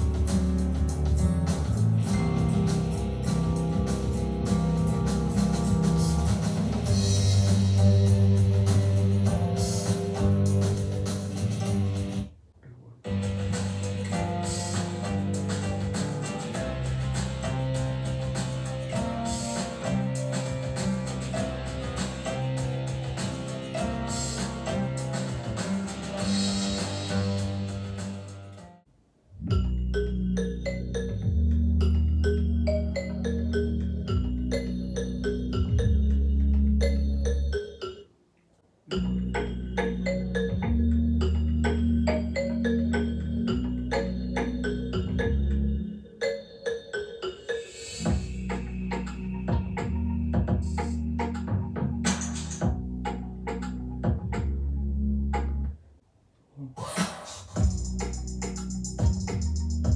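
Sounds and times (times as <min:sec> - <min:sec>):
song with guitar drums and bass: 0:00.0 - 0:12.3, 0:13.1 - 0:28.6.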